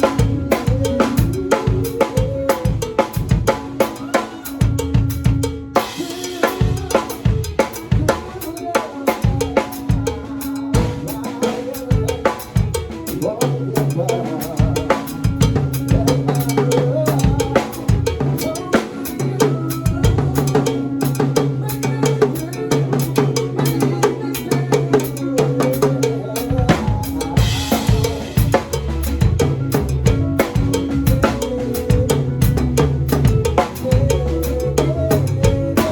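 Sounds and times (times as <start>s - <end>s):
drum kit beat: 0.0s - 35.9s
low bass notes: 26.5s - 35.9s.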